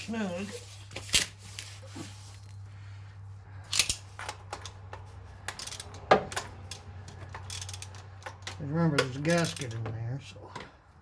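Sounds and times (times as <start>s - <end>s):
socket wrench ratcheting: 3.7s - 9.9s.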